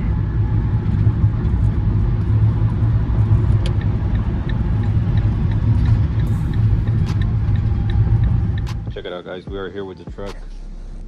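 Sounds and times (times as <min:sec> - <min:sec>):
road and engine rumble in cabin: 0:00.0 - 0:11.0
sharp click: 0:08.6 - 0:08.9.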